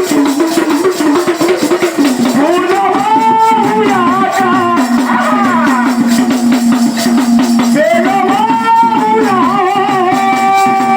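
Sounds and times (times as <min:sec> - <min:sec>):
rattling shaker percussion: 0:00.0 - 0:10.9
person singing a melody: 0:02.3 - 0:06.6, 0:07.7 - 0:10.9.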